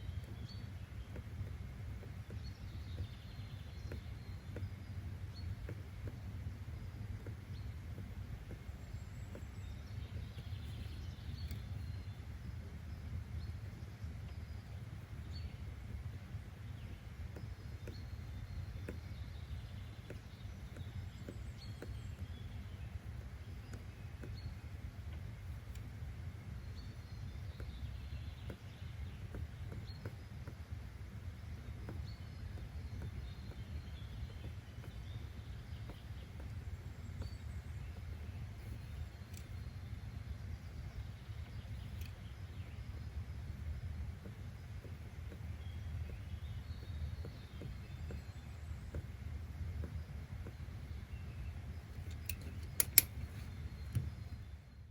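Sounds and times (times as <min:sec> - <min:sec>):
faint bird chirps: 0:00.0 - 0:54.9
low background noise: 0:00.0 - 0:54.9
light clicks: 0:28.4 - 0:39.9, 0:40.8 - 0:43.3, 0:51.8 - 0:54.3.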